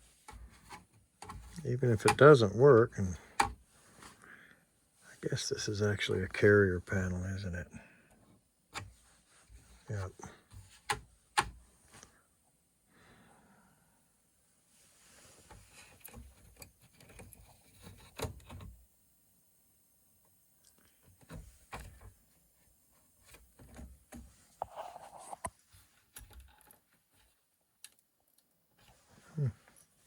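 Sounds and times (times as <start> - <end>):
handling clicks knocks and scrapes: 0.0 - 4.2, 8.7 - 12.1, 15.3 - 18.8, 23.2 - 28.0.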